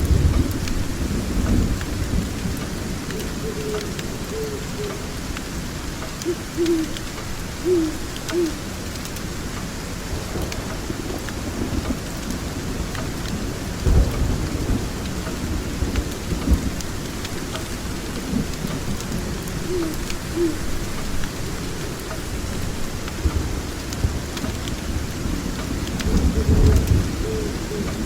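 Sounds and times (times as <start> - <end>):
low rumbling thunder: 0.0 - 5.3, 10.1 - 20.8, 22.4 - 28.0
steady rain: 0.0 - 28.0.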